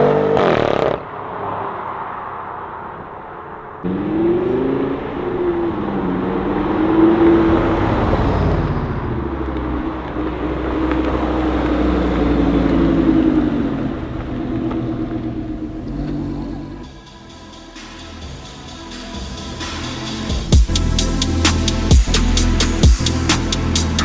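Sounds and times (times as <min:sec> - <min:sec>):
car exhaust under throttle: 0:03.2 - 0:16.9.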